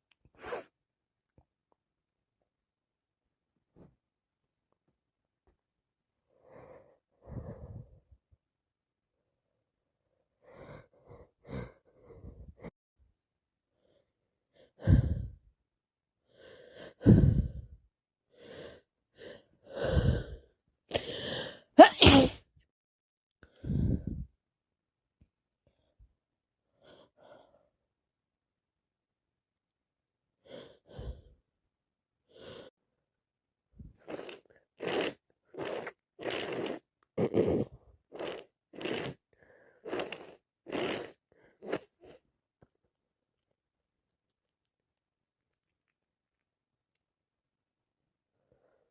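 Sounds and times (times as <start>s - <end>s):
short breaths: 16.3s - 17.8s
person sneezing: 21.8s - 22.4s.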